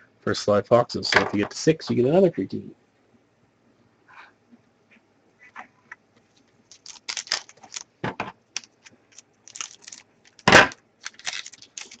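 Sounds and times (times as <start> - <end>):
cards rustling and clicking: 6.2 - 12.0
wrappers crinkling and tearing: 6.3 - 12.0.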